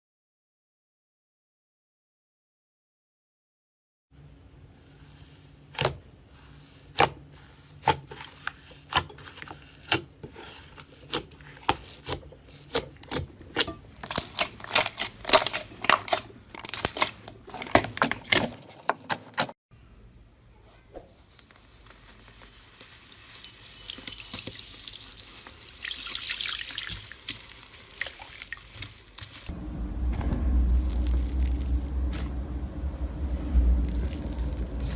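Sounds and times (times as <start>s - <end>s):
soft hissing crackle: 21.1s - 29.5s, 30.2s - 32.5s.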